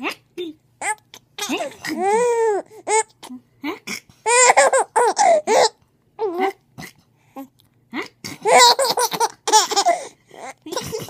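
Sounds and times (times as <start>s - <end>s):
baby laughing: 0.8s - 3.3s, 4.2s - 6.4s, 8.4s - 11.0s.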